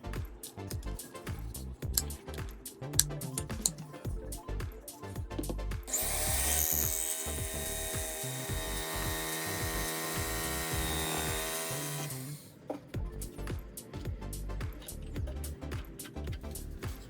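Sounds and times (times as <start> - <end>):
background music: 0.0 - 17.0
power tool cutting wood: 5.9 - 12.6.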